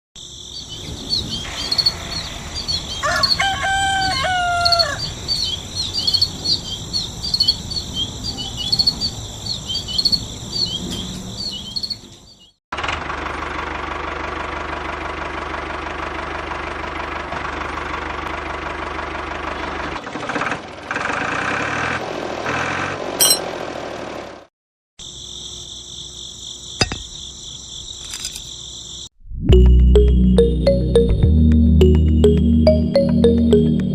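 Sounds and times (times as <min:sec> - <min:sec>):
high-pitched chirping chorus: 0:00.3 - 0:12.6
rooster crowing: 0:01.7 - 0:05.4.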